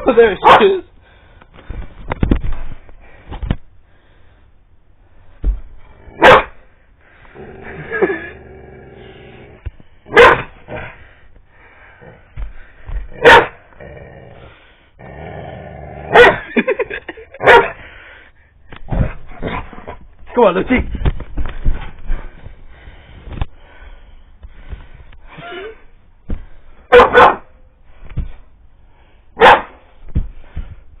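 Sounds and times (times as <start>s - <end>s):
dog barking: 0.4s - 0.7s, 6.2s - 6.6s, 10.1s - 10.5s, 13.2s - 13.6s, 16.1s - 16.5s, 17.4s - 17.8s, 26.9s - 27.5s, 29.4s - 29.8s
dog growling: 7.3s - 9.6s, 13.7s - 16.2s.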